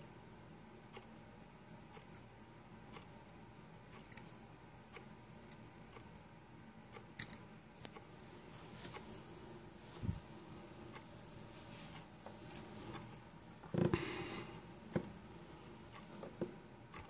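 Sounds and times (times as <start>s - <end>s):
faint regular ticking: 0.0s - 17.0s
sharp clicks of small parts: 4.0s - 5.6s, 7.2s - 7.9s.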